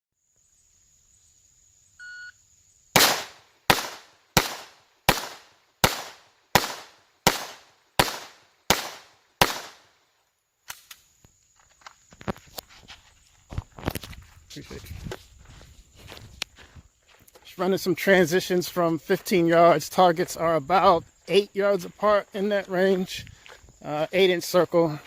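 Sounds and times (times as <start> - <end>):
short electronic beep: 2.0 - 2.4
pistol shots: 3.0 - 9.9.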